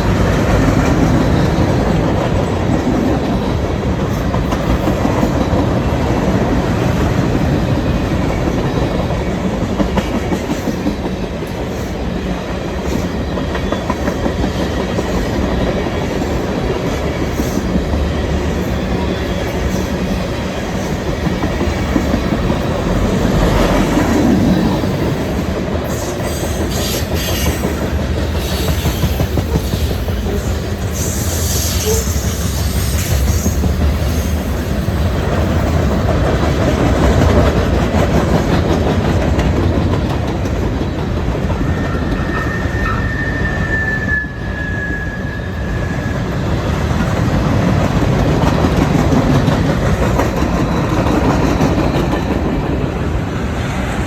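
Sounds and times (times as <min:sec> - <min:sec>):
freight train wheels rumbling: 0:00.0 - 0:54.0
high wheel squeal: 0:25.9 - 0:34.6, 0:41.6 - 0:46.4.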